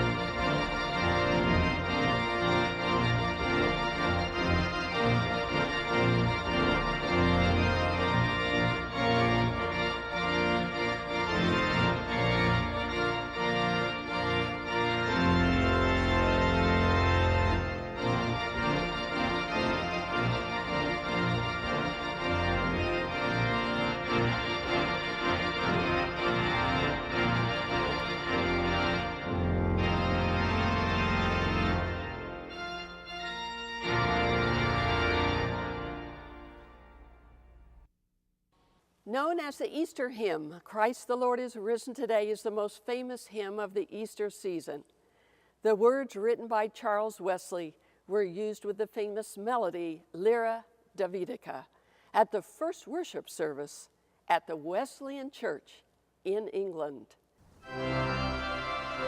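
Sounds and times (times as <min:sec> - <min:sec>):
pipe organ chords: 0:00.0 - 0:37.9, 0:57.6 - 0:59.0.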